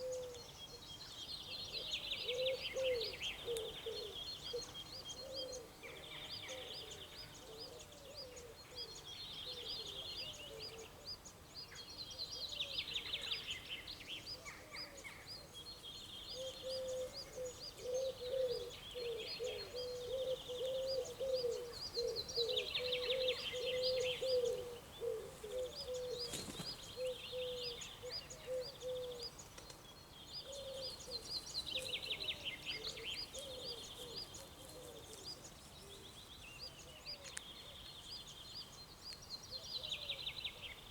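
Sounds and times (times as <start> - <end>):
low repeated bird calls: 12.3 - 29.5.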